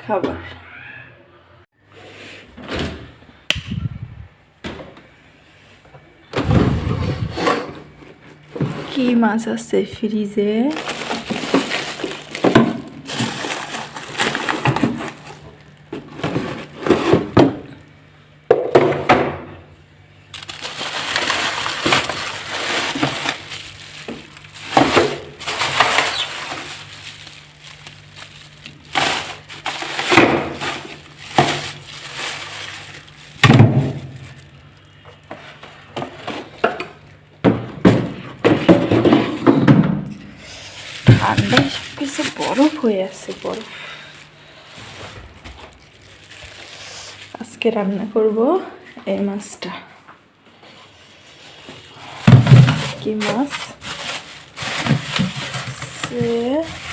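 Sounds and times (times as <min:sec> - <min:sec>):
frozen packs knocking and clinking: 0:10.6 - 0:17.9, 0:18.5 - 0:19.5, 0:20.3 - 0:47.4, 0:51.6 - 0:56.9.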